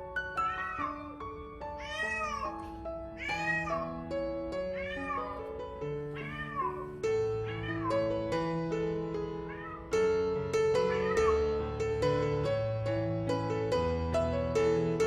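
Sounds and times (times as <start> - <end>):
piano music: 0.0 - 15.0
cat meowing loudly: 0.2 - 1.2, 1.8 - 8.4, 9.4 - 10.0, 10.8 - 11.6.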